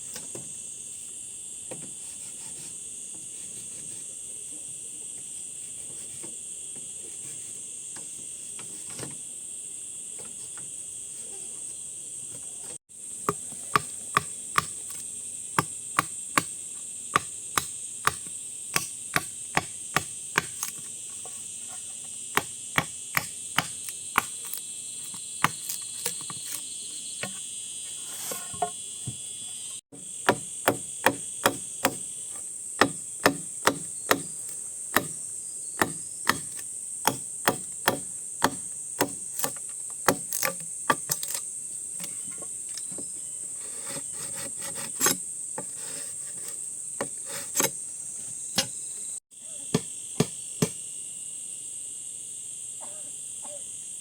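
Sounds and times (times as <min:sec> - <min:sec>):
insects chirring: 0:00.0 - 0:54.0
sharp tool strikes: 0:17.1 - 0:20.8, 0:22.3 - 0:24.6, 0:30.2 - 0:32.1, 0:32.8 - 0:35.2, 0:35.8 - 0:41.4.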